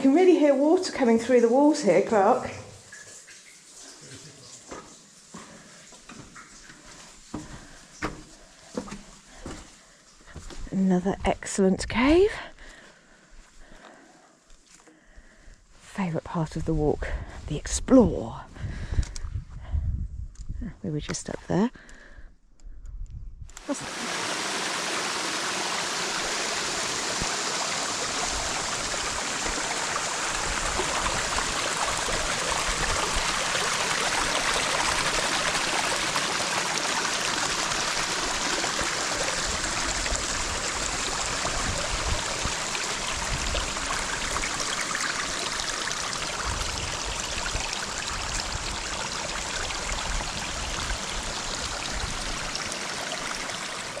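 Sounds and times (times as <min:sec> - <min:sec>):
stream flowing: 0:23.6 - 0:54.0.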